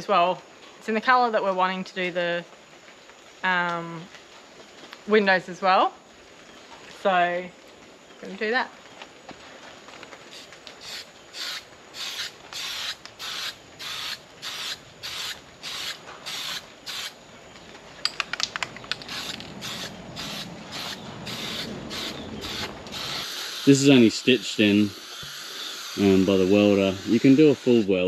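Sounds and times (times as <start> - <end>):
aerosol spray can hissing: 10.4 - 17.1, 19.1 - 23.9, 24.8 - 27.9
sharp clicks: 18.0 - 19.9.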